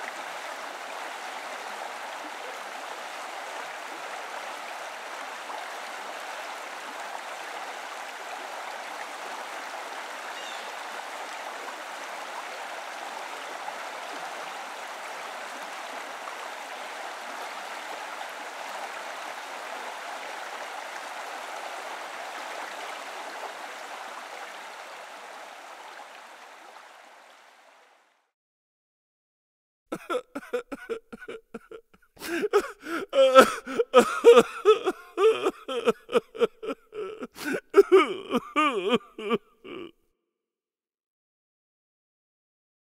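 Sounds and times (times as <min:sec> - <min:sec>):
river water babbling over rocks: 0:00.0 - 0:28.2.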